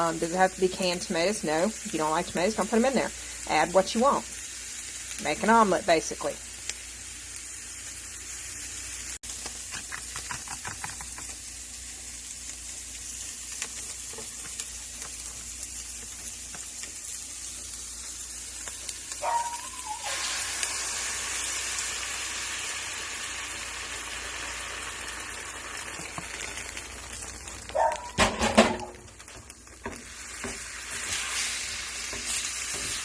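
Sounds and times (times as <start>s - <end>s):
food sizzling in a frying pan: 0.0s - 33.0s
utensil clicking against pan: 9.7s - 11.4s.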